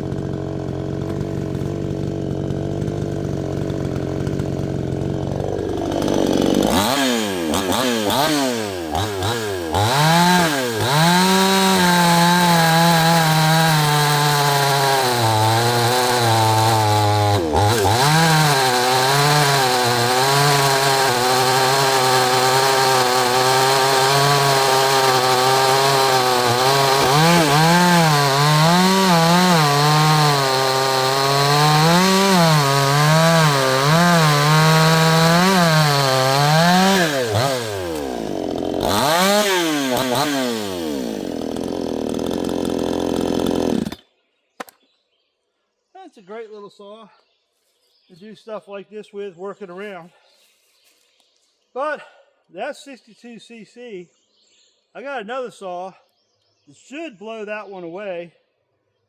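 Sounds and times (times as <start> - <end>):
chainsaw revving and cutting wood: 0.0 - 44.8.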